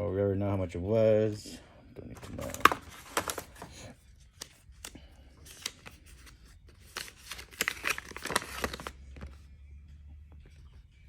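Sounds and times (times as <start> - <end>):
paper packaging rustling: 2.2 - 9.4.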